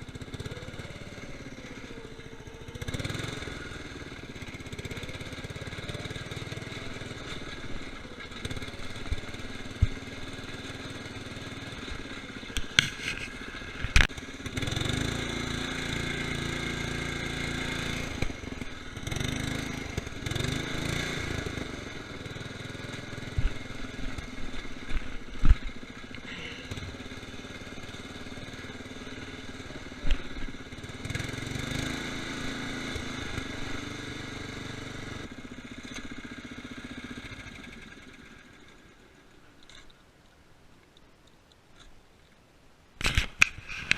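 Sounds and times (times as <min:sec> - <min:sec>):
lawn tractor engine running: 0:00.0 - 0:41.0.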